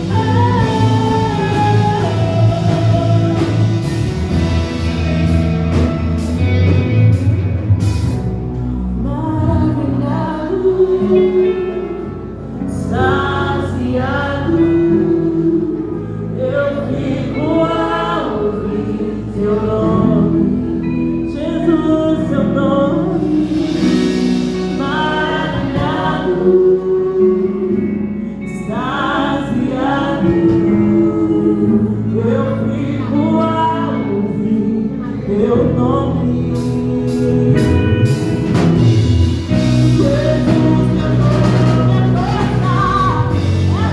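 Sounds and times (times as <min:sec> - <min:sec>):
congregation singing: 0:00.0 - 0:07.2, 0:08.0 - 0:43.9
band with bass and chords: 0:00.0 - 0:43.9.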